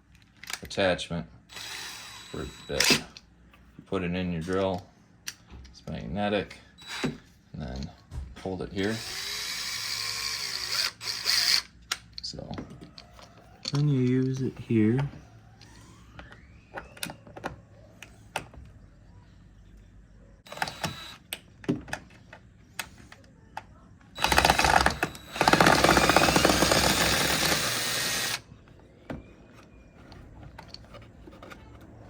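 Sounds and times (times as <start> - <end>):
drill driving a screw: 1.5 - 3.1, 6.8 - 7.2, 8.8 - 11.7, 20.5 - 21.2, 24.2 - 28.4.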